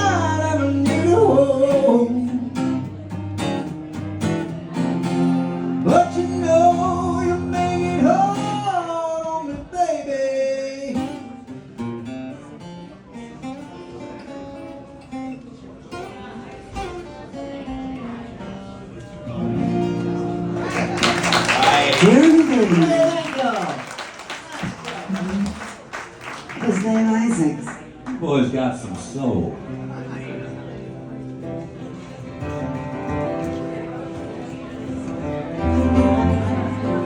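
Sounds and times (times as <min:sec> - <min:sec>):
acoustic guitar: 0:00.0 - 0:26.8, 0:27.6 - 0:37.0.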